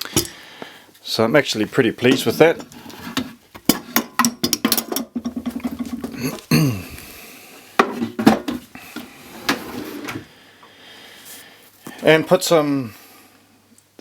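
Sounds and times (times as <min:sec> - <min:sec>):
hard objects rattling and clicking: 0:02.0 - 0:06.5.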